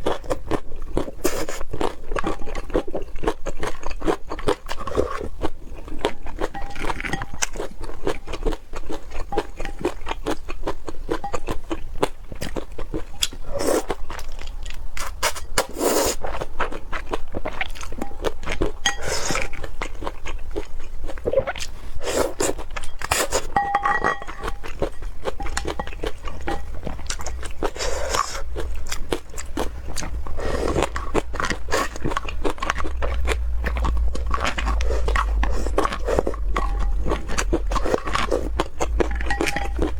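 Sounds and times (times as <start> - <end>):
person chewing and crunching food: 0.0 - 39.9
utensils clinking and scraping: 18.8 - 19.6, 22.8 - 27.5, 35.0 - 39.9.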